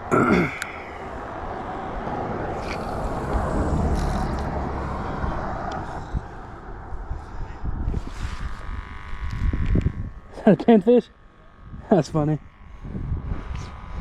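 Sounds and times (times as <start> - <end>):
vehicle passing rumble: 0.0 - 10.2
steady outdoor noise: 0.0 - 14.0.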